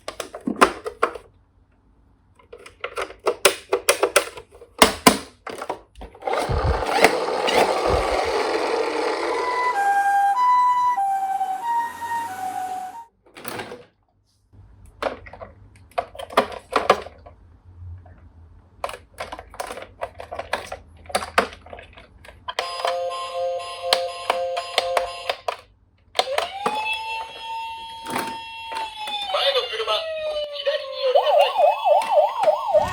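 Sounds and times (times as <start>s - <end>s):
plastic clicks and clatter: 0.0s - 1.3s, 2.4s - 8.3s, 14.9s - 17.4s, 18.8s - 23.0s
toy siren: 7.4s - 13.1s, 22.6s - 25.5s, 26.2s - 32.9s
rushing noise: 32.7s - 32.9s.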